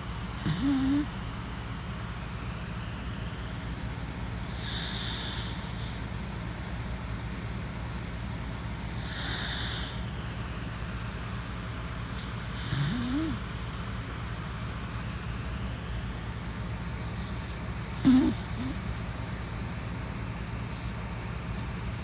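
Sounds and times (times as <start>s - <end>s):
steady low hum: 0.0s - 22.0s
dog snoring: 0.3s - 1.2s, 4.4s - 7.0s, 8.8s - 10.4s, 12.1s - 14.5s, 17.0s - 19.8s.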